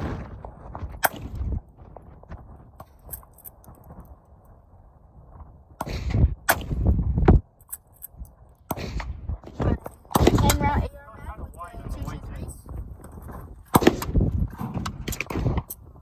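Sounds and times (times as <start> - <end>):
wind rumble on microphone: 0.0 - 16.0
gunshot cracks: 10.1 - 10.6, 13.7 - 15.6.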